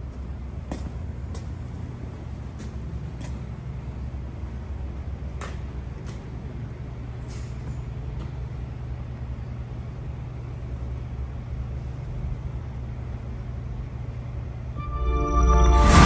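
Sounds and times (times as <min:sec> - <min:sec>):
loud music: 0:14.8 - 0:16.0.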